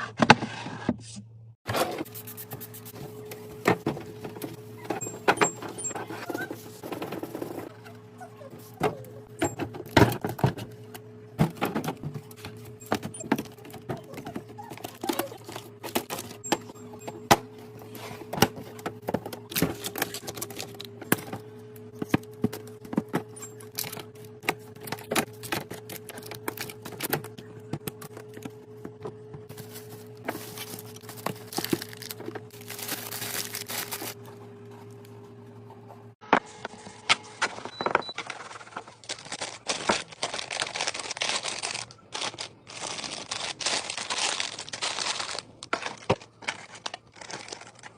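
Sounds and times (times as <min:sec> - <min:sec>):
low electrical hum: 0:00.7 - 0:47.9
packaging rustling: 0:11.9 - 0:16.8, 0:17.8 - 0:21.4, 0:22.0 - 0:28.6, 0:29.5 - 0:34.2, 0:38.2 - 0:47.9.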